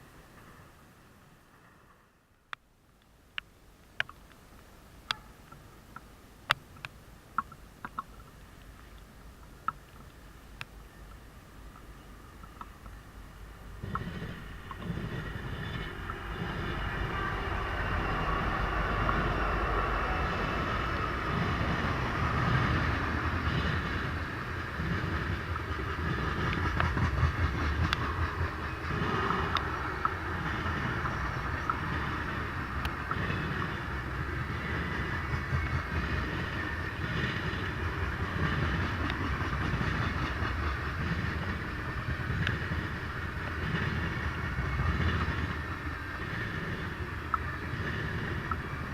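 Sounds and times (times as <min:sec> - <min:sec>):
train wheels clacking over rail joints: 0:13.8 - 0:48.9.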